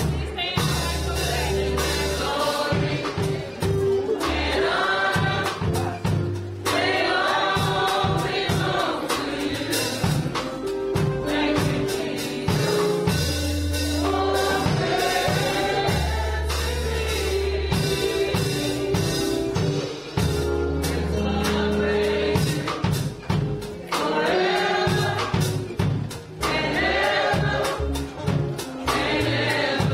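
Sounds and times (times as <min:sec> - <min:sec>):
band playing: 0:00.0 - 0:29.9
choir singing gospel: 0:00.0 - 0:29.9
drum hits: 0:00.0 - 0:29.9
low bass notes: 0:09.3 - 0:23.8.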